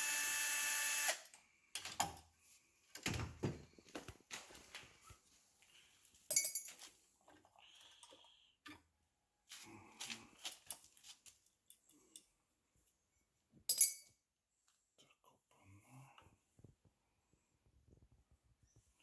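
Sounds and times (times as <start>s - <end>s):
metal parts and tools clinking: 6.3s - 6.9s, 13.7s - 14.1s.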